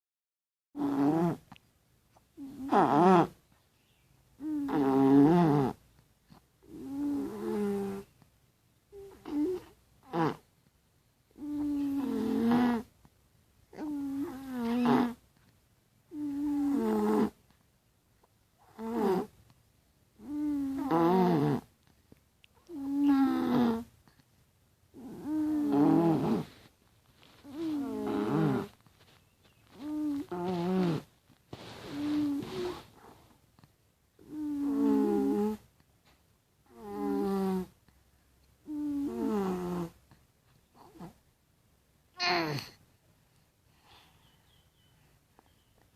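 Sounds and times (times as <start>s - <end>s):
toddler snoring: 0.8s - 1.6s, 2.4s - 3.4s, 4.4s - 8.2s, 8.9s - 10.5s, 11.3s - 12.9s, 13.7s - 15.2s, 16.1s - 17.4s, 18.6s - 19.4s, 20.2s - 21.7s, 22.6s - 24.2s, 24.9s - 28.8s, 29.5s - 33.4s, 34.2s - 35.7s, 36.7s - 37.8s, 38.6s - 40.0s, 40.8s - 41.2s, 42.2s - 42.8s.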